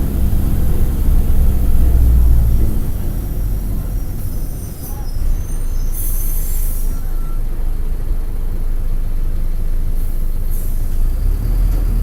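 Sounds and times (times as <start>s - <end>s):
bus diesel engine rumbling: 0.0s - 12.0s.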